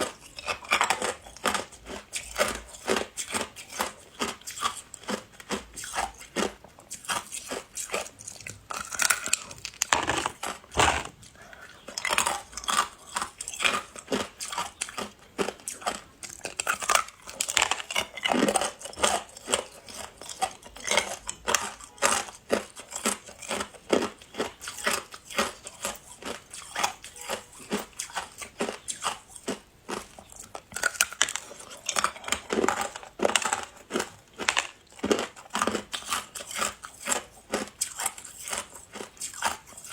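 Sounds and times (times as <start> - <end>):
ice being bitten and chewed: 0.0 - 39.9.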